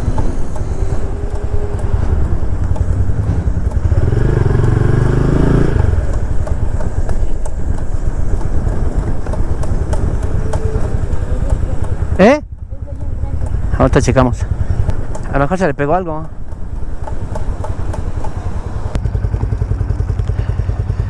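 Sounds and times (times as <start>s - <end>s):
tape clicking on motorcycle: 0.0s - 19.5s
motorcycle engine: 0.0s - 21.0s
road noise: 0.0s - 21.0s.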